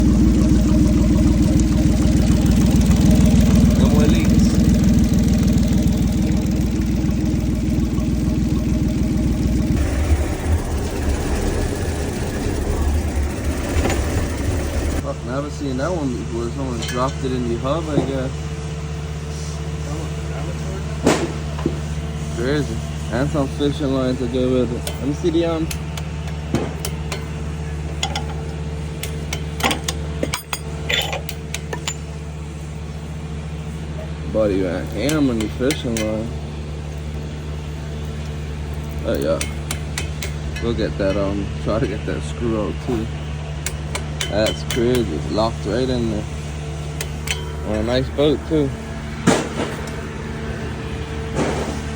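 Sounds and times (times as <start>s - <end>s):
engine idling: 0.0s - 51.9s
hand tools clicking and scraping metal: 24.8s - 32.2s, 34.6s - 37.2s, 37.8s - 42.1s, 43.6s - 46.2s, 46.9s - 48.4s.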